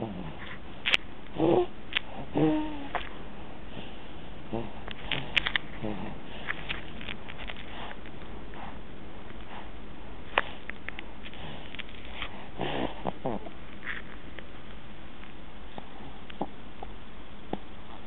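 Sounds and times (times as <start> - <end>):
baby snoring: 0.0 - 0.4, 1.4 - 3.0, 4.5 - 6.3, 12.4 - 13.6.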